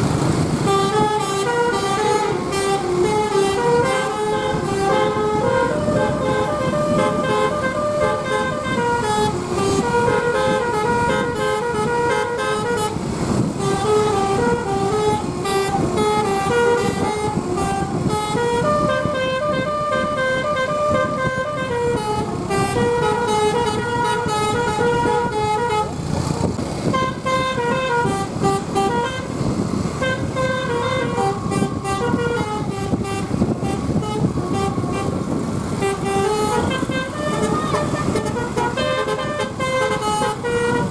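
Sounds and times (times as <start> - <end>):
low rumble of bus: 0.0 - 40.9
bus air horn playing melodies: 0.6 - 26.2, 26.8 - 40.9.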